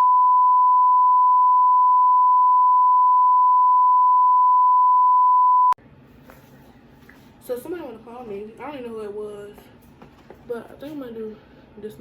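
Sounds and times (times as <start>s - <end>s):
steady bleep tone: 0.0s - 5.8s.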